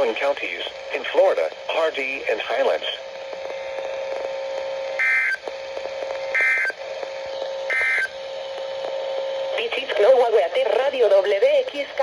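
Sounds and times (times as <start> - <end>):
steady radio hum: 0.0 - 12.0
digital data tone bursts: 5.0 - 5.4, 6.3 - 6.8, 7.7 - 8.2.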